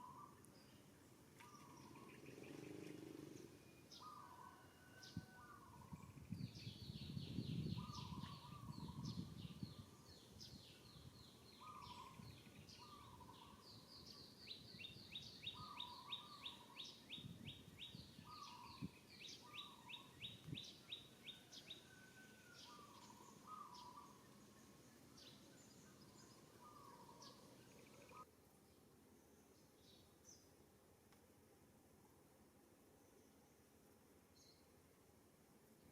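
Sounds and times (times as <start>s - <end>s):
birds chirping in trills: 0.0s - 28.3s
soft low bird calls: 0.0s - 28.3s.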